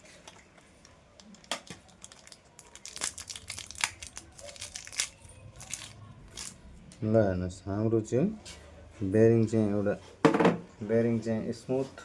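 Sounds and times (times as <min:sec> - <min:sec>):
packaging crinkling and tearing: 0:00.3 - 0:06.6.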